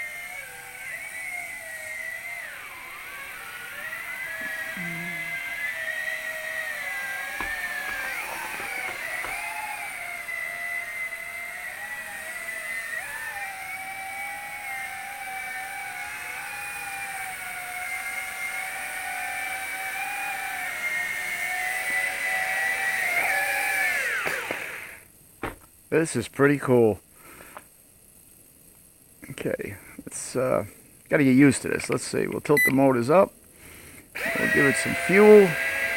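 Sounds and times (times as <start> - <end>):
model plane motor whining: 0.0 - 25.0, 34.2 - 35.9.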